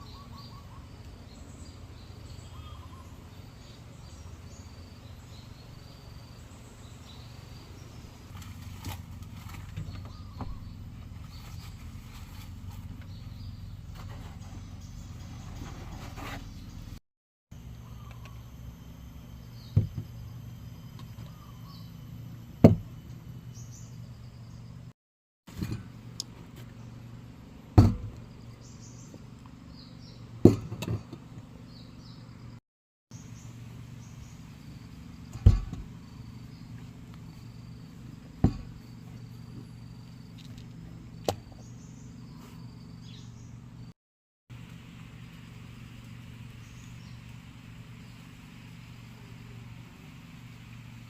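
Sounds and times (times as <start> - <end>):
bird chirps: 0.0 - 8.3, 9.8 - 11.9, 17.7 - 18.7, 19.3 - 22.0
low background hum: 0.0 - 17.0, 17.6 - 24.9, 33.2 - 43.9, 44.6 - 51.0
insect drone: 0.2 - 9.6, 17.6 - 24.9, 33.2 - 43.9, 44.7 - 51.0
sharp knocks: 22.6 - 22.9, 27.8 - 28.2, 30.4 - 31.2.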